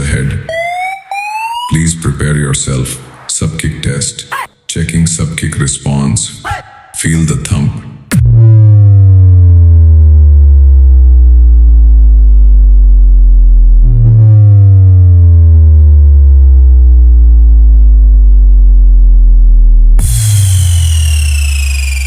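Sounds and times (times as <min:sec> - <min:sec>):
sub-bass kick tone: 0:08.1 - 0:22.0.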